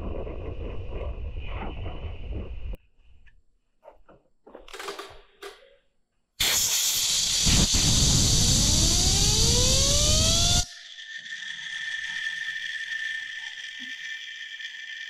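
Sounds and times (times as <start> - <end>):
compressed air hissing: 6.4 - 10.7
rising whine of spinning part: 7.4 - 15.0.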